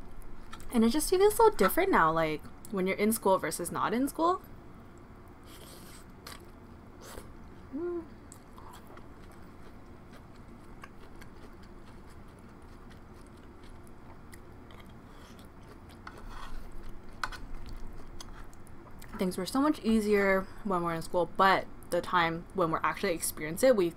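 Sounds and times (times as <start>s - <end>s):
close-up chewing and mouth sounds: 7.1s - 19.2s
person humming mm: 7.6s - 8.8s.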